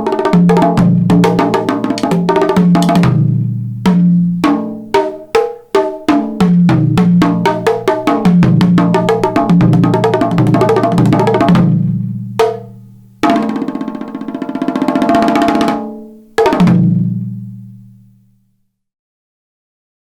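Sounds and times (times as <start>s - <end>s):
fast drum roll: 0.0s - 12.6s, 13.2s - 15.9s
drum strokes: 0.0s - 15.8s.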